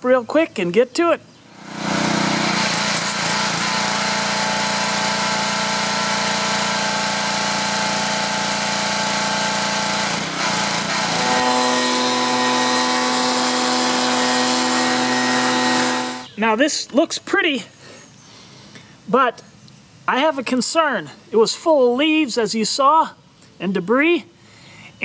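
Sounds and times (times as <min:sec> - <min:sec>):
pressure washer spraying: 0:01.5 - 0:16.3.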